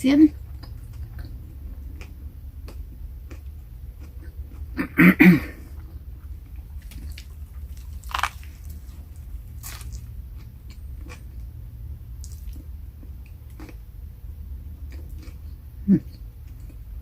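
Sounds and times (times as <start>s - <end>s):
person chewing food: 0.5s - 4.8s, 5.6s - 11.5s, 12.2s - 13.8s, 14.8s - 16.9s
person biting sandwich: 6.8s - 10.1s.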